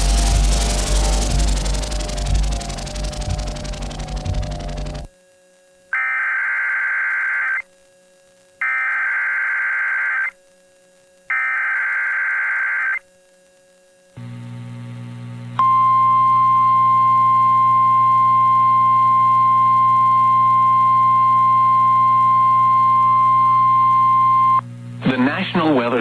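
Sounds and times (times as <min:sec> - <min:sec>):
harsh digital data warble: 0:00.0 - 0:05.1
steady alert tone: 0:00.0 - 0:05.1
receiver hiss and hum: 0:00.0 - 0:26.0.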